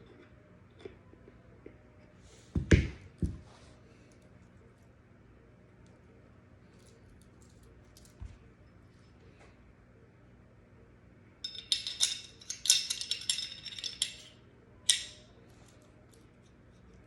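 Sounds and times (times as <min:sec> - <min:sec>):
metal parts clinking and rattling: 0:11.4 - 0:15.3.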